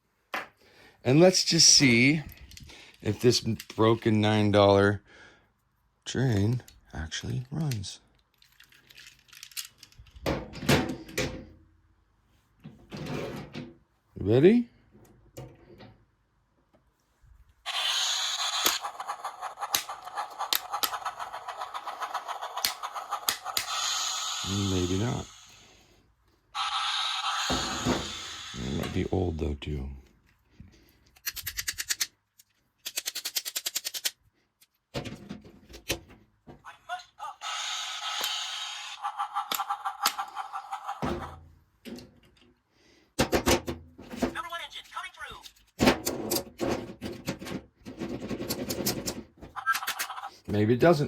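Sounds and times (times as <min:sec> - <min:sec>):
small plastic clicks and clattering: 0:07.7 - 0:10.2, 0:31.1 - 0:36.1
toy engine drive clicking: 0:17.7 - 0:25.7, 0:26.6 - 0:29.1, 0:37.4 - 0:41.3, 0:49.6 - 0:50.3.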